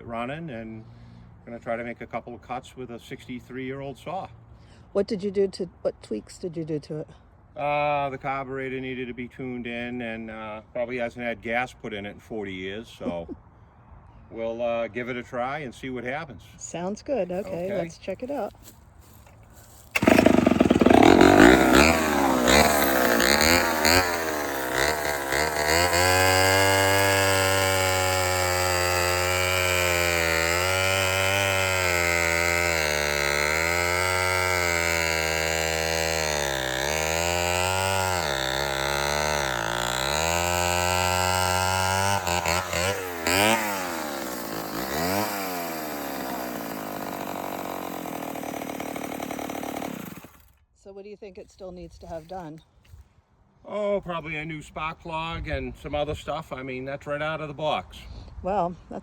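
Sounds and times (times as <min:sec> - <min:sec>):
chainsaw engine revving: 0:19.6 - 0:50.6.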